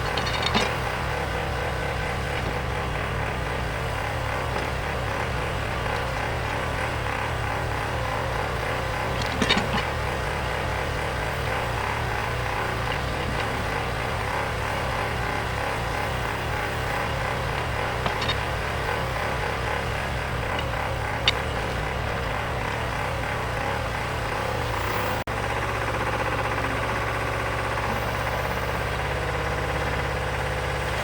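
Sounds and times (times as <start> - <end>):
metallic clatter: 0.0 - 7.8, 8.6 - 15.8, 17.0 - 23.9
loader engine running: 0.0 - 31.0.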